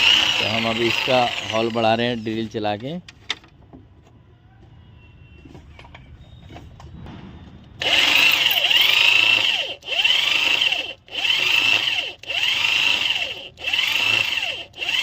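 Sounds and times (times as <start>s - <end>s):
electric hand drill running: 0.0s - 2.0s, 7.8s - 15.0s.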